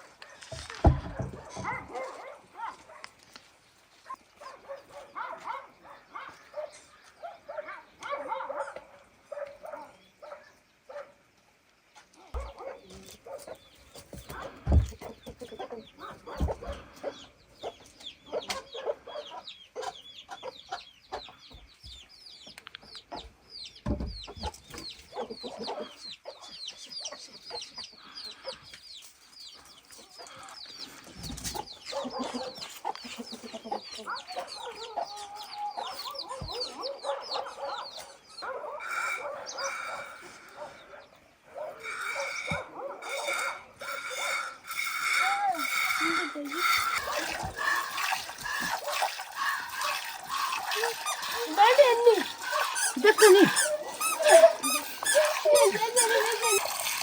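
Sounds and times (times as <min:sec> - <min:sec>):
chickens clucking: 0:12.4 - 0:57.0.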